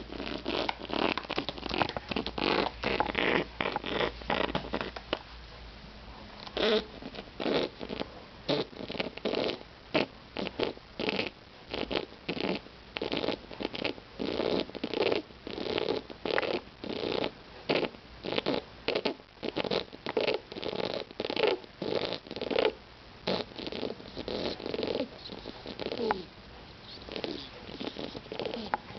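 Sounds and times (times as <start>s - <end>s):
pigeon wheezing rattling breathing: 23.3s - 28.9s.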